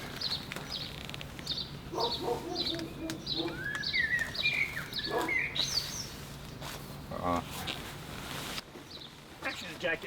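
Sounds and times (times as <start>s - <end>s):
bird chirping: 0.0s - 6.2s.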